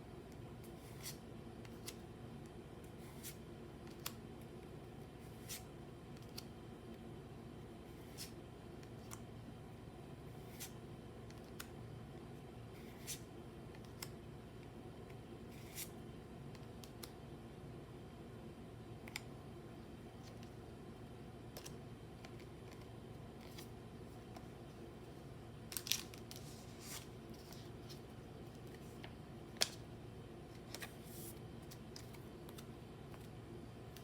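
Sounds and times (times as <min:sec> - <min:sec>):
low steady hum: 0:00.0 - 0:34.0
card packaging clicks and rustles: 0:25.7 - 0:29.8.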